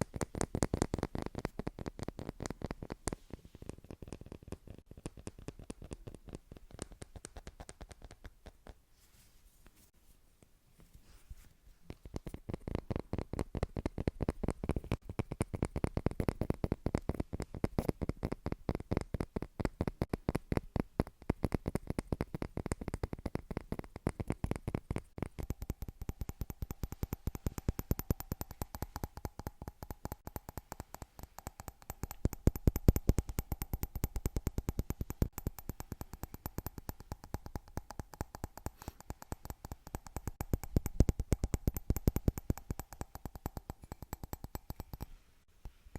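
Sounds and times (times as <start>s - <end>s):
sharp taps on hard object: 24.0s - 45.2s
faint steady tone: 24.7s - 45.9s.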